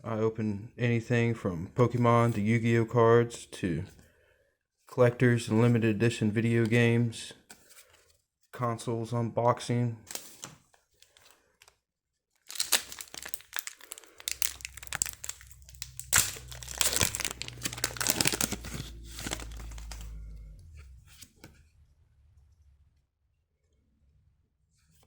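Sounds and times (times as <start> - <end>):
foil pack crinkling and tearing: 12.4 - 20.2
low rumble: 14.7 - 21.2.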